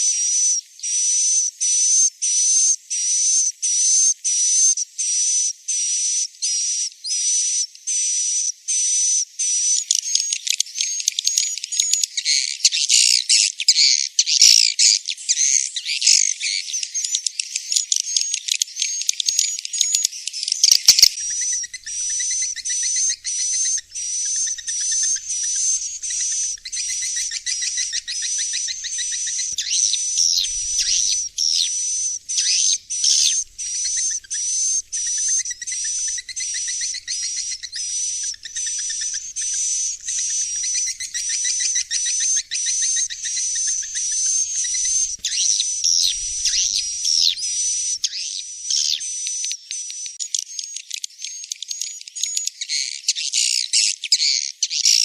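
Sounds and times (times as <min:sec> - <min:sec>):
swiftlet twittering chirps: 0:20.7 - 0:49.2.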